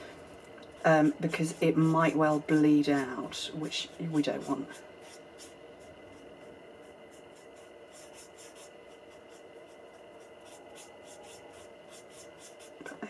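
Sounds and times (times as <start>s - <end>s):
marker rubbing on cardstock: 3.5s - 13.0s.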